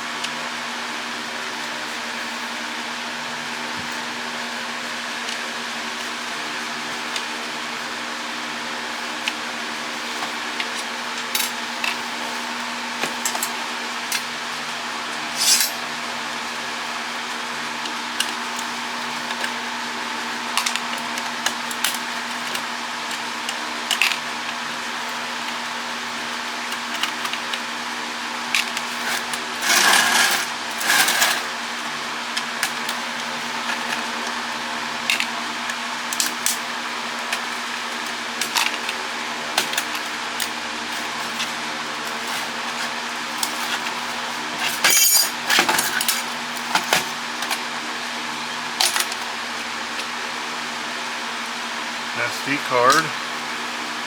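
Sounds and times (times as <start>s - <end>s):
steady background hum: 0.0s - 54.0s
hand tools clicking and clattering: 13.0s - 14.3s, 15.2s - 15.8s, 28.6s - 31.5s, 35.0s - 47.6s.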